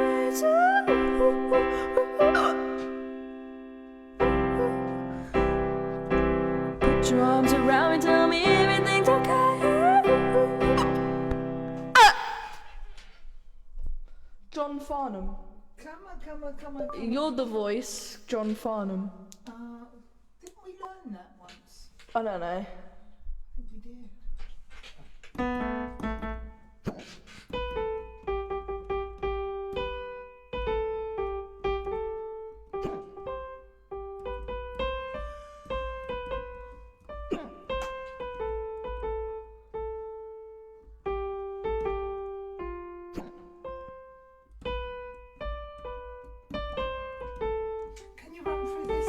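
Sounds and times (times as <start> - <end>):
keyboard slow melody: 0.0 - 12.4, 27.6 - 49.0.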